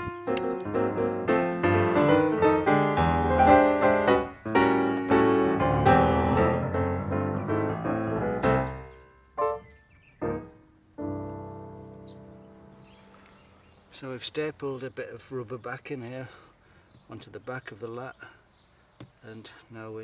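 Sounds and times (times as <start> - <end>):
piano music: 0.0 - 13.6.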